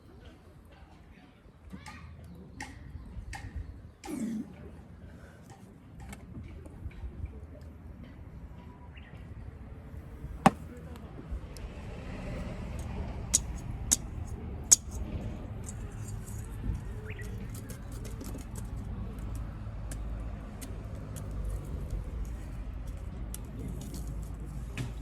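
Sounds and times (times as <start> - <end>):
small hard objects clicking: 13.3 - 15.0.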